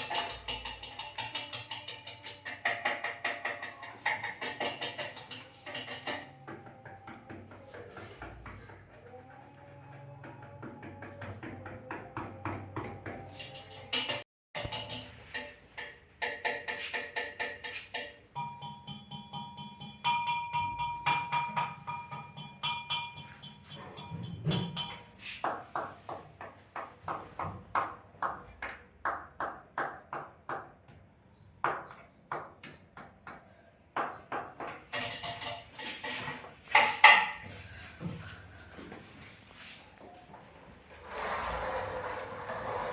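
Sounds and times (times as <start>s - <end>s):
tapping on bike with ping: 10.8s - 28.4s.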